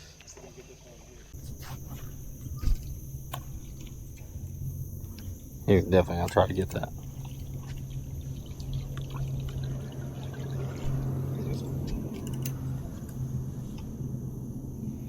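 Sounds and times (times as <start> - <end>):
steady low hum: 1.0 - 15.0
water trickling and pouring: 5.2 - 13.0.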